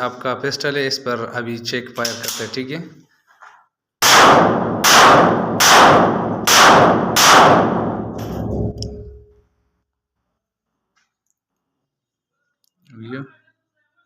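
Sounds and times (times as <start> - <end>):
pistol shots with echo: 4.0 - 9.0.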